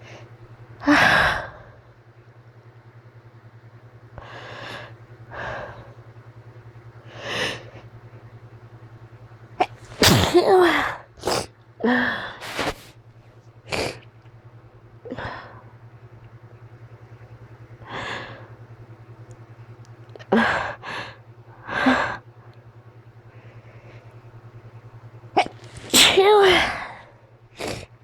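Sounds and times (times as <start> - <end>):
low steady hum: 0.0 - 28.0
person sneezing: 9.6 - 11.5, 12.3 - 12.9, 25.4 - 26.9
gasps: 9.6 - 12.9, 13.7 - 14.1, 25.4 - 27.0, 27.6 - 27.9.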